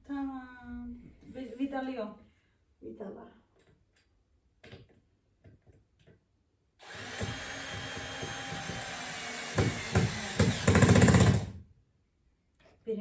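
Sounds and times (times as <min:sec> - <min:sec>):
power screwdriver whirring: 0:06.8 - 0:11.5.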